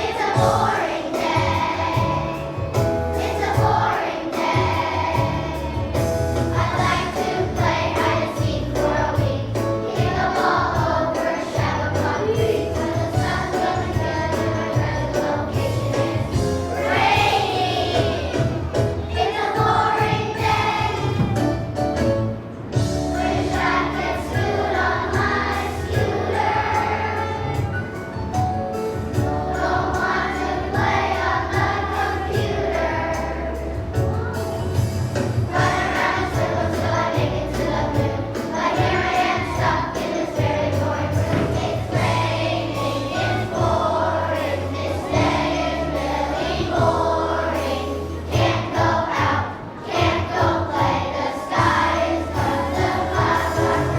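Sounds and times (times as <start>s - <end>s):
children's choir singing: 0.0s - 53.9s
instrumental accompaniment with bass: 0.0s - 53.9s.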